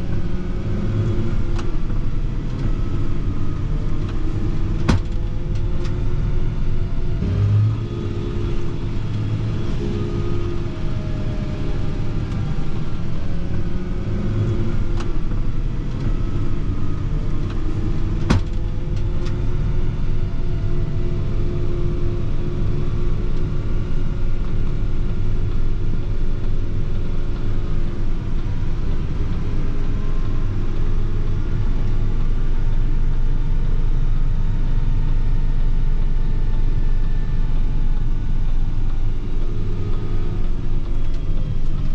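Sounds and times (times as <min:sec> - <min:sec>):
tractor diesel engine under load: 0:00.0 - 0:41.9.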